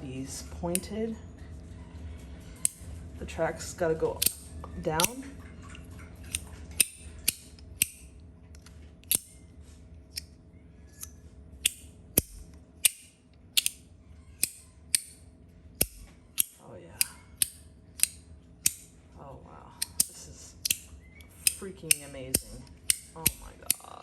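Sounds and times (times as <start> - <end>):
fidget slider clacking shut: 13.6 - 13.8.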